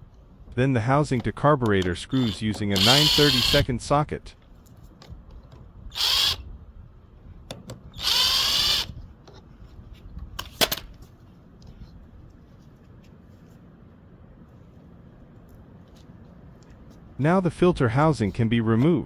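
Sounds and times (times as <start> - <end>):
sharp metal clicks: 1.2 - 3.6
power driver whirring: 1.2 - 3.7, 5.9 - 6.4, 7.9 - 9.0.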